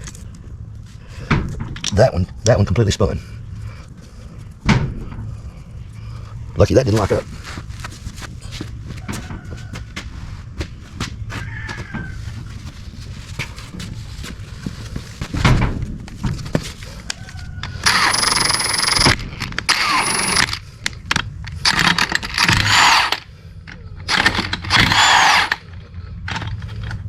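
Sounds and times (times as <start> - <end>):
power wrench on bolts: 17.8 - 20.6, 21.7 - 23.2, 24.1 - 25.6.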